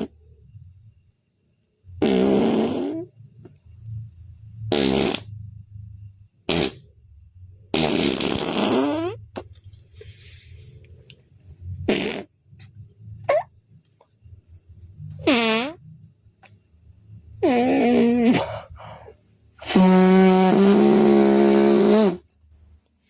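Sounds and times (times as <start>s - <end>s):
person imitating fart sounds: 2.0s - 3.1s, 4.7s - 5.4s, 6.5s - 6.9s, 7.7s - 9.5s, 11.8s - 12.4s, 13.2s - 13.5s, 15.2s - 15.8s, 17.4s - 18.6s, 19.6s - 22.2s.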